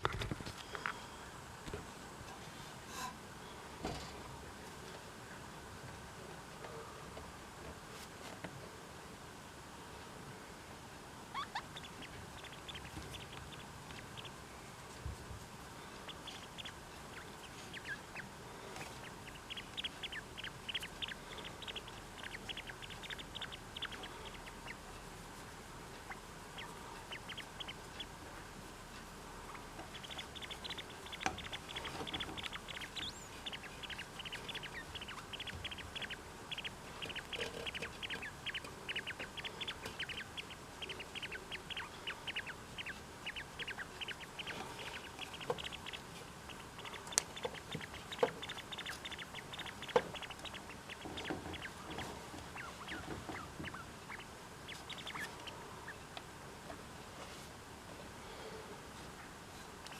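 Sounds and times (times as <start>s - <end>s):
rapid high chirps: 19.0s - 24.8s, 29.9s - 55.3s.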